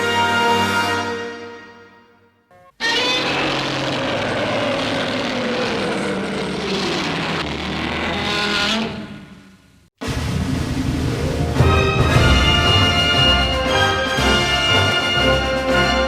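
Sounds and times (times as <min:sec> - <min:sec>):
noisy rush with falling tone: 0:10.0 - 0:12.3.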